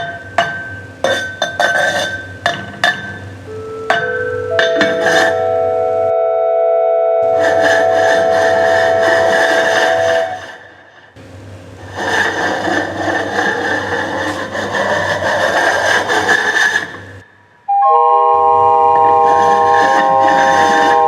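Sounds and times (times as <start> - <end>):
low hum: 0.0 - 15.4
held recorder notes: 3.5 - 10.6, 17.7 - 21.0.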